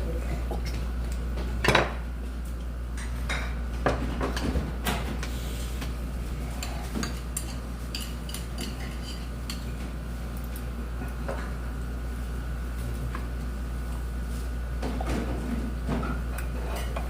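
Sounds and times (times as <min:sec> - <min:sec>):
steady low hum: 0:00.0 - 0:17.0
utensils clinking against dishes: 0:06.5 - 0:09.8, 0:16.0 - 0:17.0.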